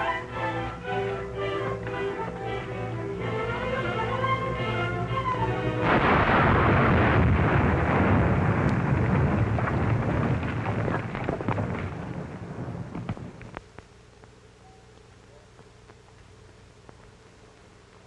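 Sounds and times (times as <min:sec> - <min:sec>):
explosion rumbling: 0:05.8 - 0:13.5
sharp cracks and clatter: 0:05.8 - 0:14.4.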